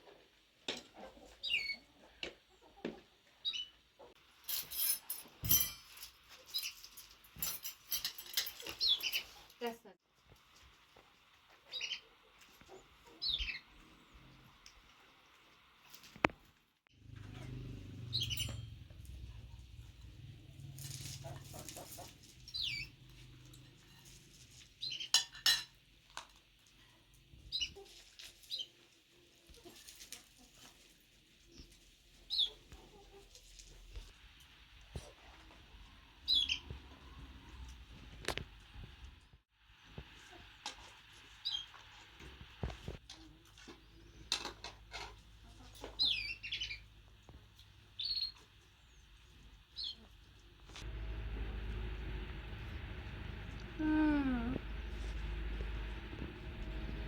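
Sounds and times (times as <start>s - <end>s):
small birds chirping: 1.2s - 2.8s, 3.4s - 4.1s, 8.4s - 9.8s, 11.6s - 14.4s, 18.0s - 18.7s, 21.2s - 23.1s, 24.8s - 25.2s, 27.3s - 28.8s, 31.4s - 33.1s, 36.2s - 37.6s, 41.4s - 41.8s, 45.8s - 50.6s
dishes clinking: 4.5s - 6.1s, 25.1s - 25.8s.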